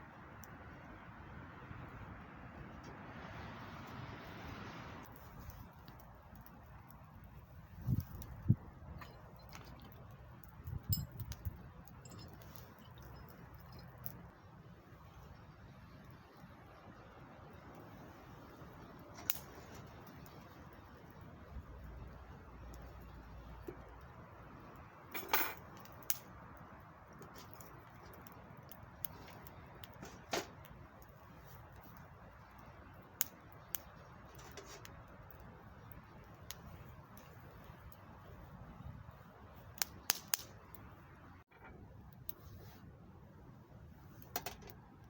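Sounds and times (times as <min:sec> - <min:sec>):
wood fire crackling: 0:00.0 - 0:45.0
fire pops: 0:03.8 - 0:14.4, 0:17.6 - 0:42.8.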